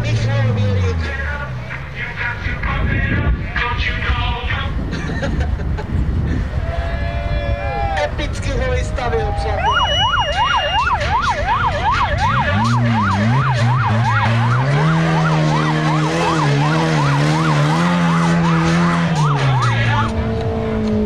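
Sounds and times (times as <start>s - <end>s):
yelping siren: 9.3s - 21.0s.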